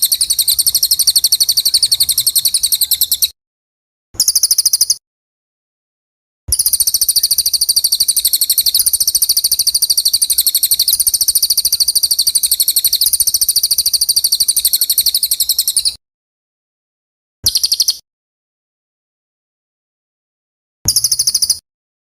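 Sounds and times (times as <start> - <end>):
high-pitched bird trill: 0.0 - 3.4, 4.2 - 5.0, 6.5 - 16.0, 17.4 - 18.0, 20.9 - 21.6.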